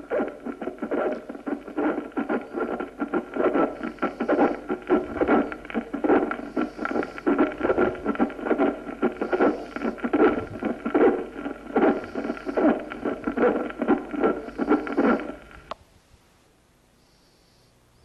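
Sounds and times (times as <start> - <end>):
rough rubbing through stethoscope: 0.0 - 15.6.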